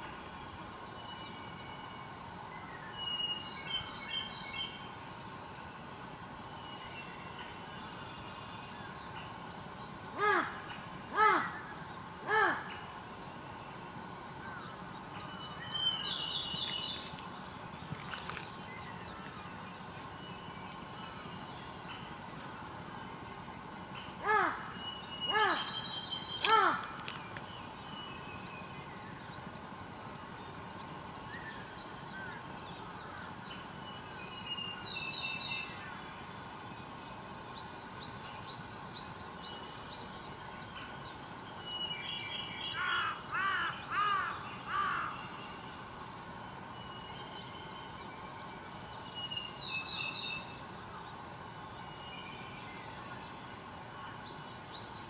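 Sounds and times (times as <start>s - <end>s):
crow cawing: 10.2s - 10.6s, 11.2s - 11.6s, 12.3s - 12.7s, 24.2s - 24.7s, 25.3s - 25.7s, 26.4s - 27.0s, 42.8s - 45.1s
wild birds calling: 10.2s - 13.0s, 24.2s - 27.5s, 42.7s - 45.4s.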